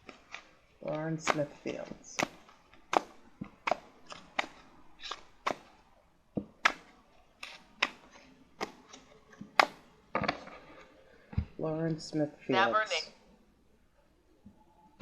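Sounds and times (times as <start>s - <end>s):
cards being shuffled: 0.0s - 5.8s, 6.4s - 10.9s.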